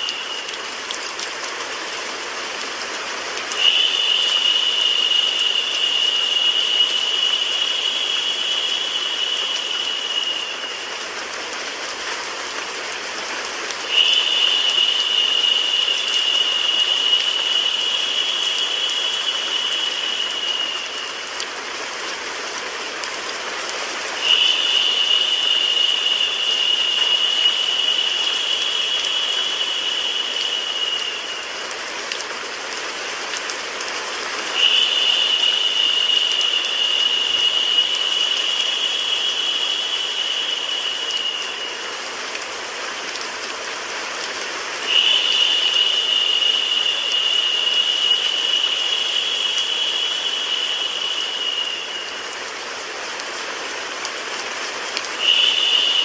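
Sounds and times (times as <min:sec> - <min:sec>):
high whistle-like tone: 0:00.0 - 0:00.7, 0:03.5 - 0:11.0, 0:13.8 - 0:21.5, 0:24.2 - 0:31.8, 0:34.5 - 0:42.1, 0:44.8 - 0:52.7, 0:55.2 - 0:56.0
rain-like white noise hiss: 0:00.0 - 0:56.0.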